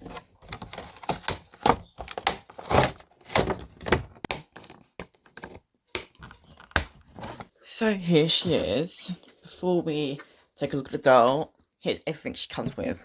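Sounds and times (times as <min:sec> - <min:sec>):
packaging rustling: 0:00.0 - 0:05.6.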